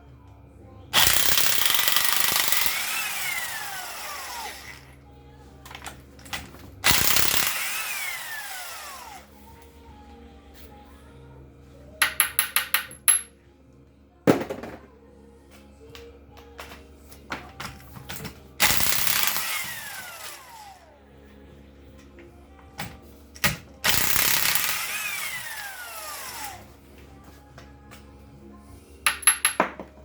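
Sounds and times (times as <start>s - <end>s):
air impact wrench hammering: 1.0s - 5.0s, 6.8s - 9.2s, 12.0s - 13.3s, 18.6s - 20.7s, 22.8s - 26.7s, 29.1s - 29.9s
tool knock: 12.0s - 13.3s, 29.1s - 30.0s
metallic clinks of tools: 29.1s - 29.8s.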